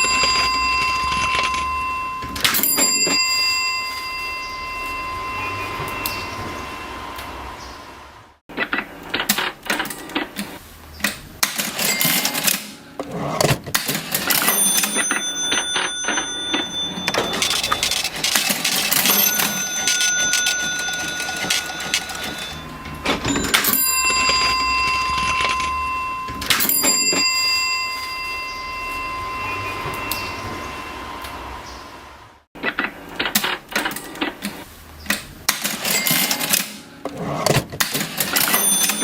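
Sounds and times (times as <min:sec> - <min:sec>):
cash register keys clattering: 0:00.0 - 0:04.6, 0:11.4 - 0:30.4, 0:35.4 - 0:39.0
cash register bell ringing: 0:00.0 - 0:07.5, 0:11.5 - 0:31.9, 0:35.5 - 0:39.0.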